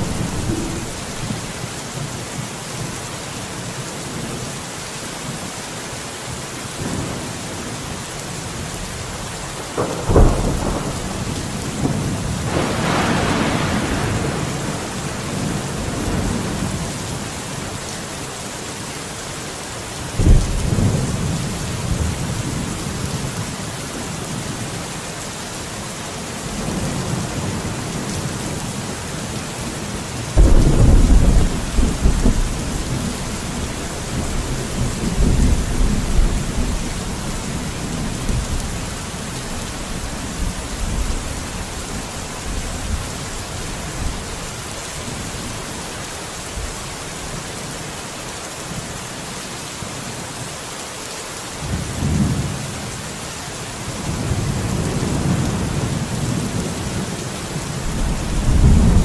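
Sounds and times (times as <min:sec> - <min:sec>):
thunderclap: 0:00.0 - 0:01.5, 0:09.6 - 0:16.7, 0:30.4 - 0:37.6, 0:57.9 - 0:59.0
rolling thunder: 0:00.0 - 0:01.6, 0:09.6 - 0:17.0, 0:20.2 - 0:23.2, 0:30.4 - 0:41.8, 0:57.9 - 0:59.0
steady rain: 0:00.0 - 0:59.0.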